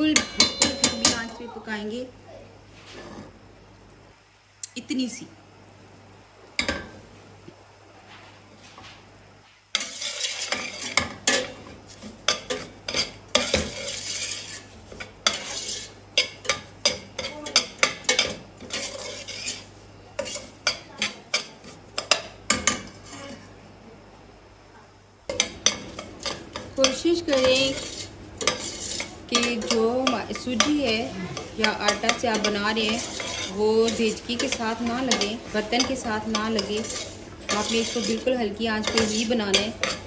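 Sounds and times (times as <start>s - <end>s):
spoon scraping and clinking in pot: 0.0s - 1.4s, 9.8s - 23.5s, 25.3s - 40.0s.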